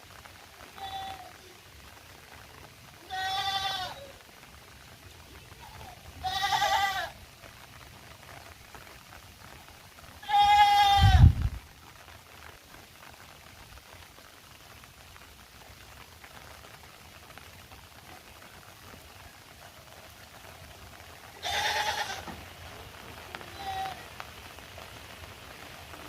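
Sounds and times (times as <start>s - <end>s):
faint steady rain: 0.0s - 26.0s
farm animal bleating: 3.1s - 4.2s, 5.7s - 7.2s, 10.2s - 11.4s, 21.4s - 22.4s, 23.4s - 24.1s.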